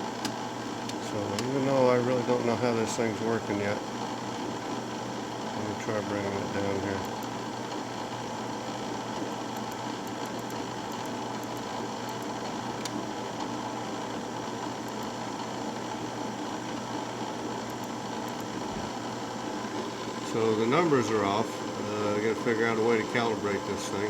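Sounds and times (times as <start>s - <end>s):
drill press motor humming: 0.0s - 24.0s.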